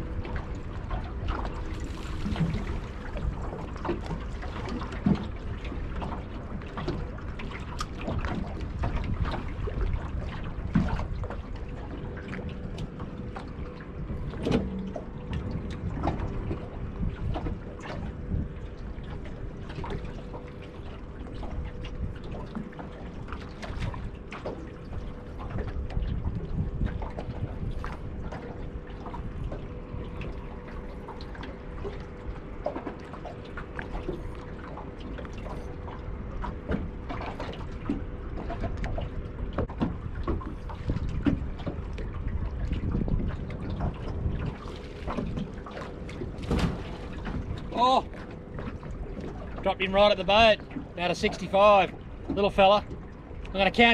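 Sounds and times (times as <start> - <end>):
water lapping against boat hull: 0.0 - 53.9
splashes and knocks: 0.9 - 5.4, 36.4 - 49.6
strong wind: 8.0 - 20.1, 25.4 - 30.9, 38.7 - 49.6.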